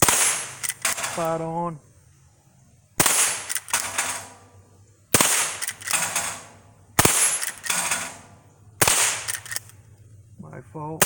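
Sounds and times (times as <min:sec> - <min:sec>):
rifle gunshots: 0:00.0 - 0:01.4, 0:03.0 - 0:04.4, 0:05.1 - 0:09.7
rifle action clicks: 0:00.3 - 0:01.4, 0:03.3 - 0:04.0, 0:05.2 - 0:06.4, 0:07.3 - 0:08.1, 0:08.8 - 0:10.0.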